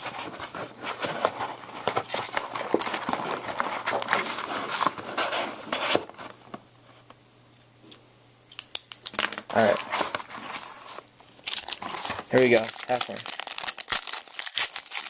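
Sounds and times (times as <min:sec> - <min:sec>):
plastic wrapping crinkling and tearing: 0:00.0 - 0:06.2, 0:08.8 - 0:15.0.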